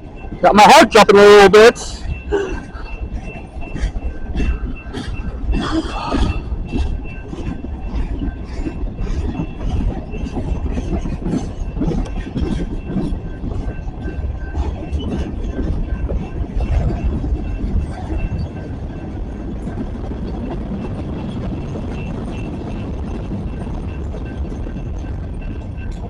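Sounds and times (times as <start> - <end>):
faint high wheel squeal: 0.0 - 26.0
train wheels clacking over rail joints: 0.0 - 26.0.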